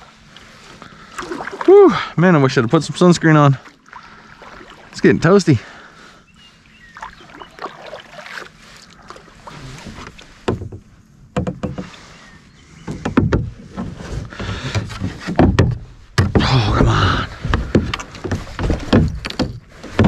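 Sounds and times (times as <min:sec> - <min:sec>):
paddle splashing in water: 0:00.0 - 0:02.1, 0:03.5 - 0:10.8
paddle knocking against hull: 0:09.1 - 0:12.0, 0:12.8 - 0:20.0.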